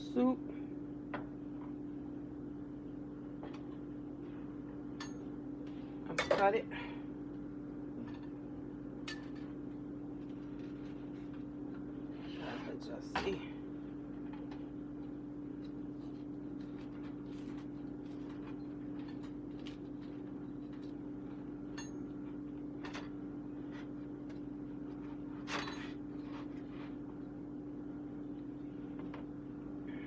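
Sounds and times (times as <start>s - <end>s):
kitchen appliance humming: 0.0s - 30.0s.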